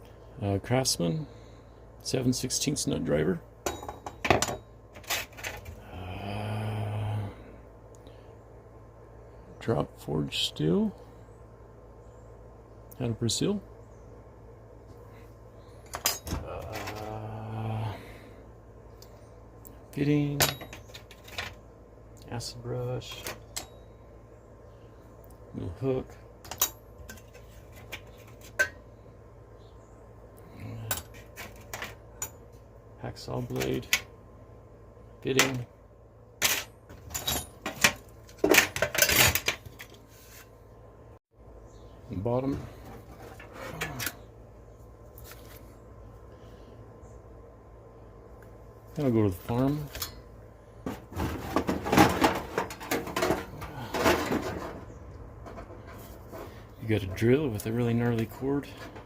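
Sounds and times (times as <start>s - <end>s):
tools clattering in toolbox: 36.4s - 40.0s, 50.9s - 54.8s.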